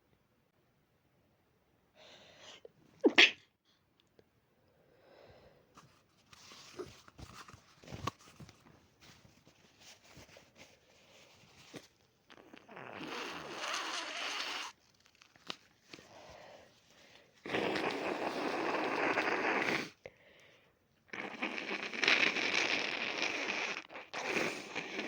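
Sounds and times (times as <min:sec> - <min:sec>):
person sneezing: 0:03.0 - 0:03.5
rustling and handling noises: 0:05.7 - 0:12.3, 0:14.7 - 0:17.4.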